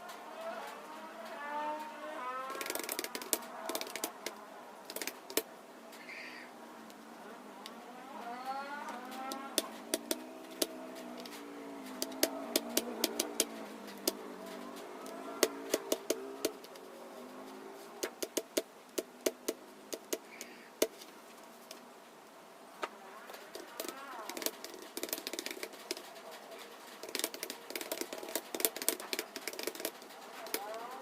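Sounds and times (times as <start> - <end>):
faint background sound: 0.0 - 31.0
computer keyboard typing: 2.5 - 5.5, 8.8 - 16.8, 18.0 - 21.1, 23.4 - 31.0.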